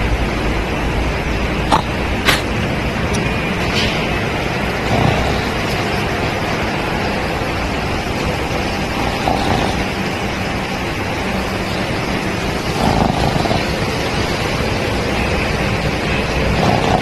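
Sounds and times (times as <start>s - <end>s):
dog snoring: 1.7s - 2.5s, 4.4s - 17.0s.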